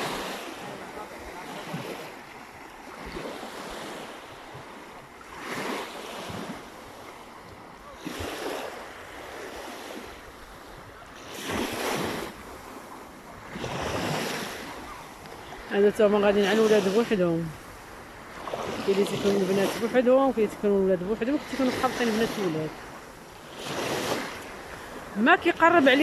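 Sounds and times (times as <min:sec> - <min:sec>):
sea waves breaking on shore: 0:00.0 - 0:26.0.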